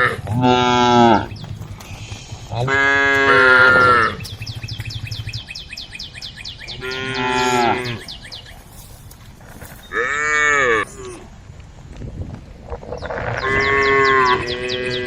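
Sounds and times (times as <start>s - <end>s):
cows mooing: 0.0s - 5.5s, 6.7s - 8.2s, 9.9s - 11.2s, 13.0s - 15.0s
high-pitched ticking or chirping: 3.2s - 7.4s.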